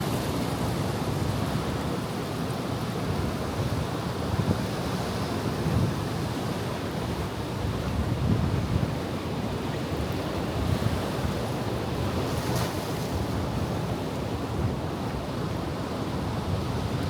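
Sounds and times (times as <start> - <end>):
ocean surf waves: 0.0 - 17.0
wind buffeting microphone: 3.2 - 9.2.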